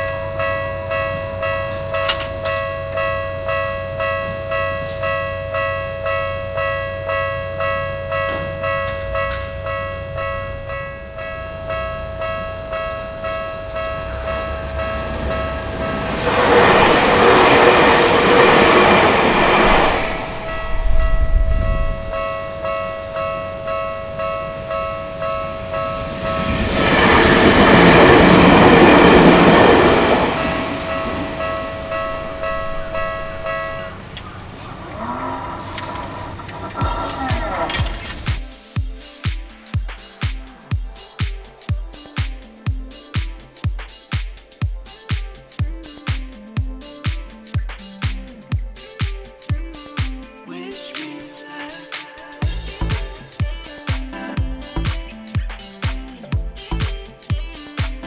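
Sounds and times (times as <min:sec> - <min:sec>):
railway crossing bell ringing: 0:00.0 - 0:35.4
electric train passing: 0:00.0 - 0:57.8.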